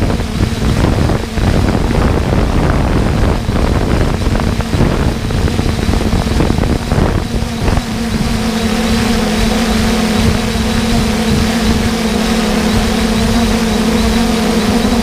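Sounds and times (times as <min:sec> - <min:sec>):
harvesting machinery rumbling: 0:00.0 - 0:15.0.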